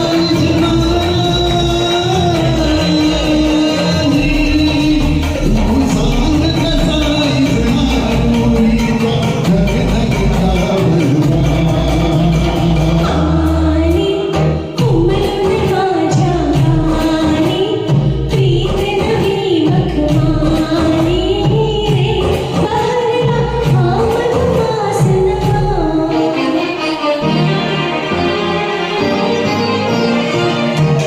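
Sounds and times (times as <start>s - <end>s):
karaoke backing track: 0.0s - 31.0s
person singing: 0.0s - 31.0s.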